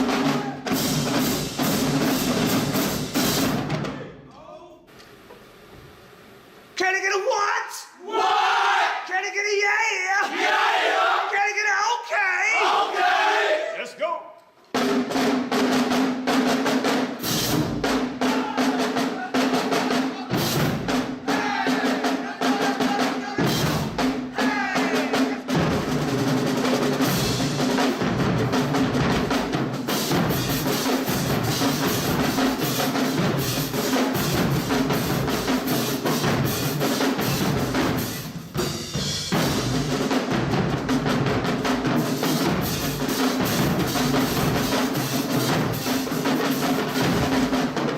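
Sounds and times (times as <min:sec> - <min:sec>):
band music with heavy drumming: 0:00.0 - 0:04.2, 0:14.7 - 0:47.9.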